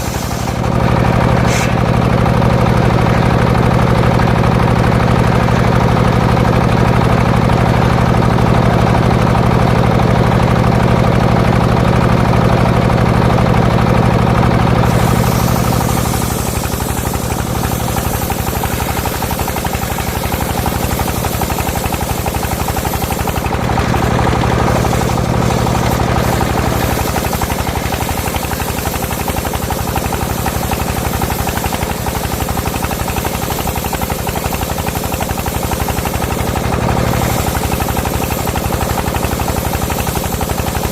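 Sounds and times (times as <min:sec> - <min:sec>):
saw blade cutting log: 0:00.0 - 0:00.7, 0:01.3 - 0:02.0, 0:14.8 - 0:40.9
engine running with pulsing beat: 0:00.0 - 0:40.9.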